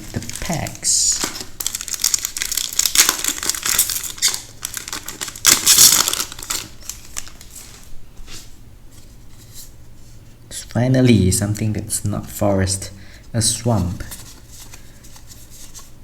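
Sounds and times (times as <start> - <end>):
plastic wrapper crinkling: 0.0 - 7.9.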